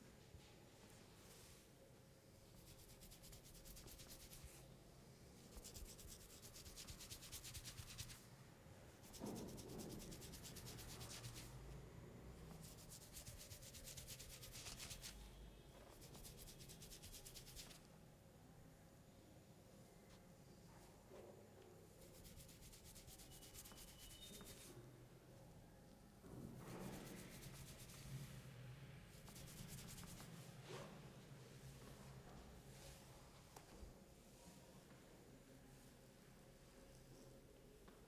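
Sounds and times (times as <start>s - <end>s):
hands rubbing skin and hair: 2.6s - 4.6s, 5.5s - 8.2s, 9.0s - 11.5s, 12.6s - 15.2s, 16.0s - 17.8s, 22.0s - 24.7s, 26.6s - 28.1s, 29.2s - 30.3s.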